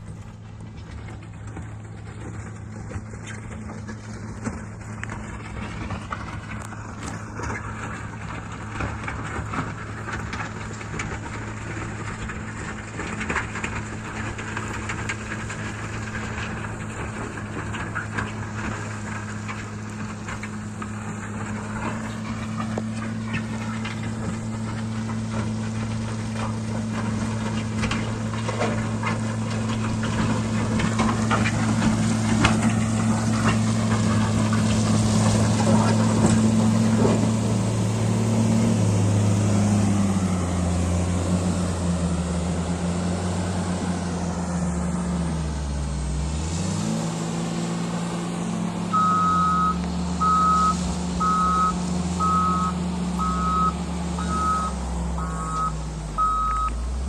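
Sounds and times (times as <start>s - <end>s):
heavy machine engine running: 0.0s - 57.0s.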